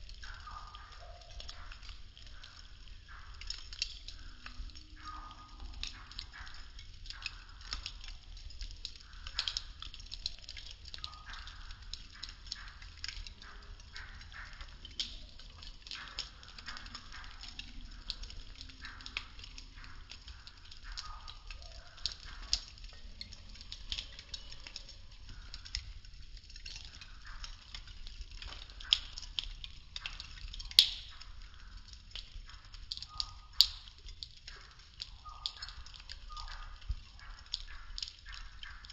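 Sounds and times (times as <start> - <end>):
sharp pops and snaps: 0.0 - 38.9
wooden sticks burning and crackling: 0.0 - 38.9.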